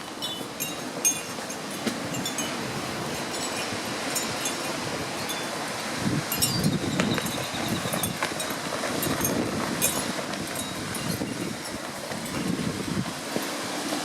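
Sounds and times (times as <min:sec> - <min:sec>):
strong wind buffeting microphone: 0:00.0 - 0:13.8.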